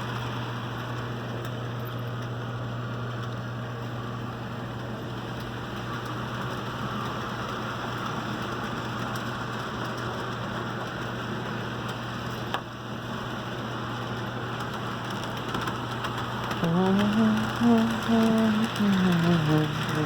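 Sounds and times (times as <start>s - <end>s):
constant low hum: 0.0s - 20.0s
model train rolling whir: 0.0s - 20.0s.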